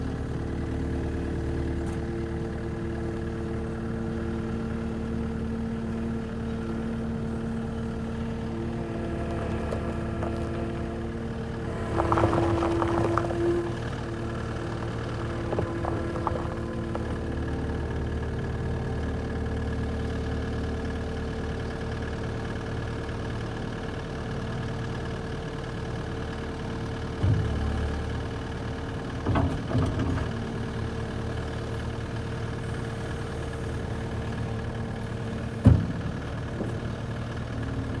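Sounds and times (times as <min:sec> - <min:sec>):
diesel engine idling: 0:00.0 - 0:38.0
clunks: 0:08.5 - 0:17.6, 0:27.2 - 0:30.9, 0:34.2 - 0:38.0.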